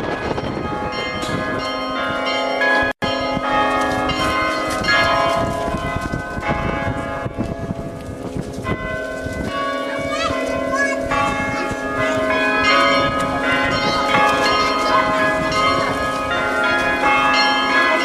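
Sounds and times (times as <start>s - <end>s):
church bells ringing: 0.0s - 18.0s.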